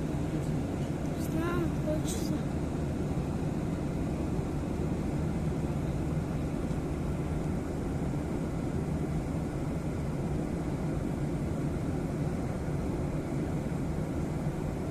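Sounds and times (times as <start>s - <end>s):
moving vehicle rumble: 0.0s - 3.3s.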